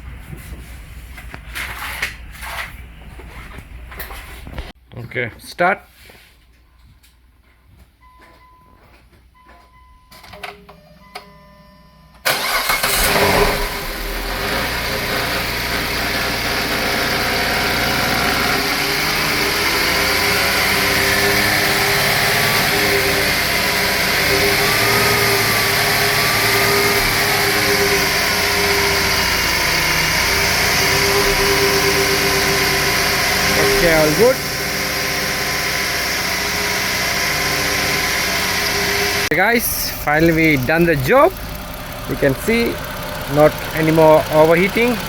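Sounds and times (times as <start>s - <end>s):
car engine cranking and idling: 12.2s - 45.0s.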